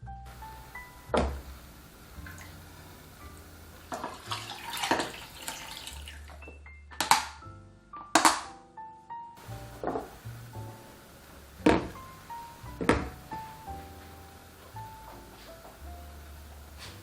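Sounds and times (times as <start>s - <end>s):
tap running water into sink: 2.2s - 2.7s, 3.9s - 6.2s.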